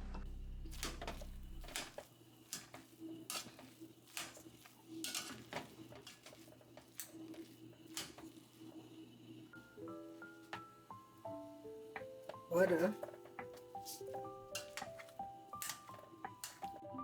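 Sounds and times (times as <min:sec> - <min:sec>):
spoon scraping a pot: 0:00.7 - 0:08.8, 0:13.0 - 0:16.8.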